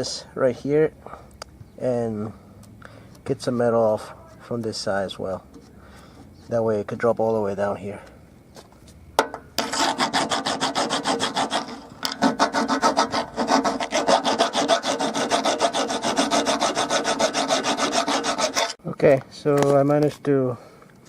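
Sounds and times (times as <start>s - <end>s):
tool scraping metal: 9.6s - 18.8s.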